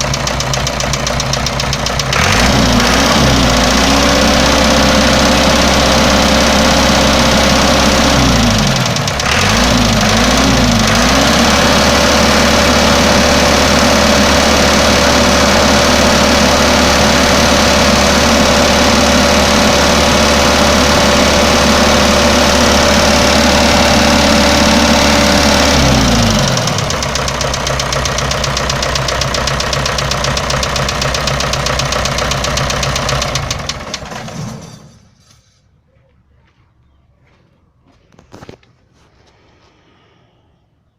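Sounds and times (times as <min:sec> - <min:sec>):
ringing engine knock: 0:00.0 - 0:02.2
diesel engine revving and idling: 0:00.0 - 0:34.5.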